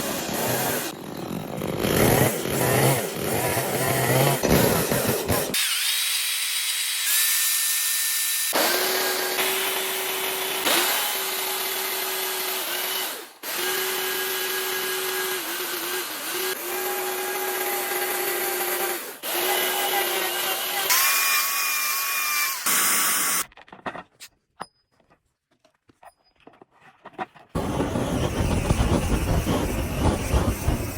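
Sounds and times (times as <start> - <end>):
power tool carving wood: 0.0 - 23.4.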